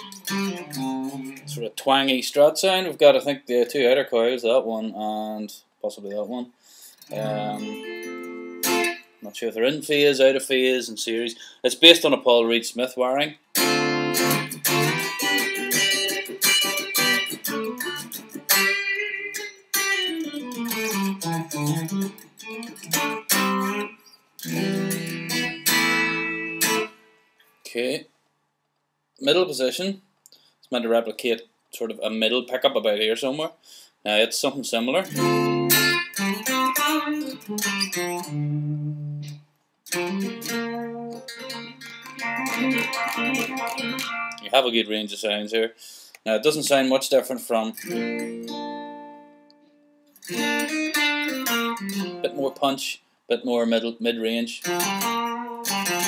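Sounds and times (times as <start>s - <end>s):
twangy electric guitar: 0.0s - 1.6s, 7.1s - 9.1s, 13.6s - 27.0s, 35.1s - 44.5s, 50.2s - 52.4s, 54.6s - 56.0s.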